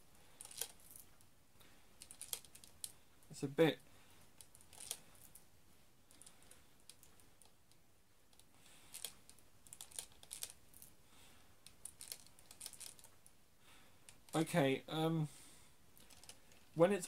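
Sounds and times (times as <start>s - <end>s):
small plastic clicks: 0.3s - 1.3s, 2.0s - 3.0s, 4.4s - 5.4s, 6.1s - 10.9s, 11.6s - 13.3s, 16.0s - 16.8s.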